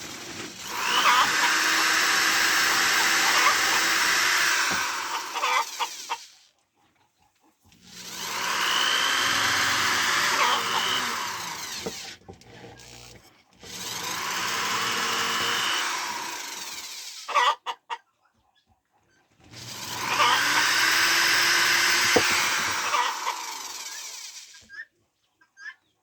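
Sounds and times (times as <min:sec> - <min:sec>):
handheld electric power tool: 0:00.0 - 0:06.4, 0:07.7 - 0:17.4, 0:19.4 - 0:24.6.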